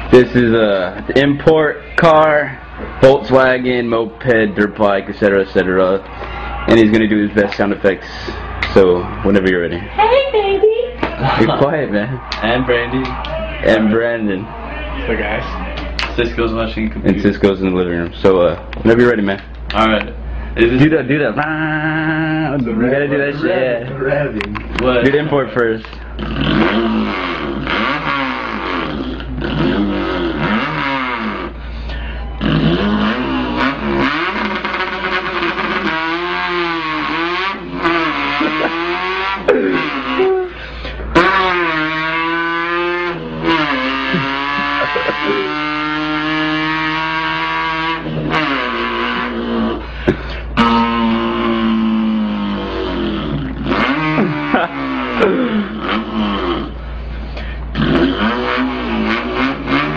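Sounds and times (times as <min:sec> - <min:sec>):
man imitating engine revving: 0:20.6 - 0:23.6, 0:25.9 - 0:59.9.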